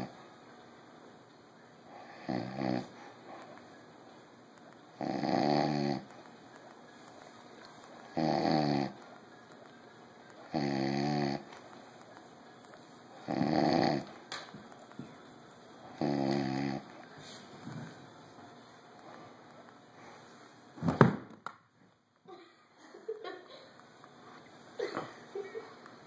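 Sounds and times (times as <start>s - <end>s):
quiet breathing: 0.0s - 5.1s, 15.0s - 20.7s
man snoring: 2.0s - 3.0s, 5.0s - 6.1s, 8.1s - 9.0s, 10.4s - 11.5s, 13.2s - 14.1s, 16.0s - 16.9s.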